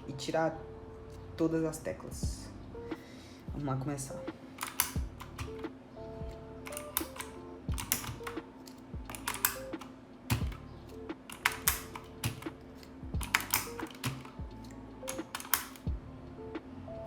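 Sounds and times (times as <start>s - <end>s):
keycaps clicking off keyboard: 4.5s - 5.7s, 6.7s - 15.9s.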